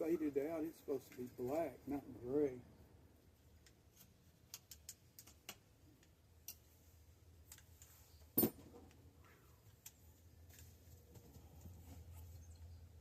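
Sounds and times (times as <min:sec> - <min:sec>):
metallic clicks of tools: 0:03.6 - 0:06.7.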